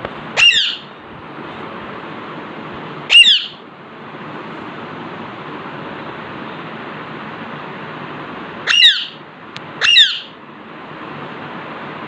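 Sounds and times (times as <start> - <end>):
steady background hiss: 0.0 - 12.0
parakeet squawking: 0.4 - 0.9, 3.1 - 3.6, 8.6 - 9.2, 9.8 - 10.4.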